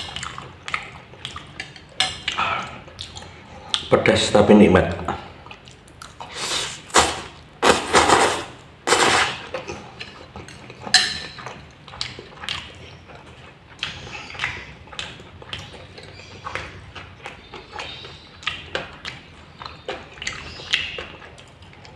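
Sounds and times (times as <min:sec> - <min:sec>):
chewing and slurping: 0:00.0 - 0:03.9, 0:05.3 - 0:21.9
cutlery clicking on a plate: 0:01.3 - 0:02.4, 0:10.0 - 0:11.5.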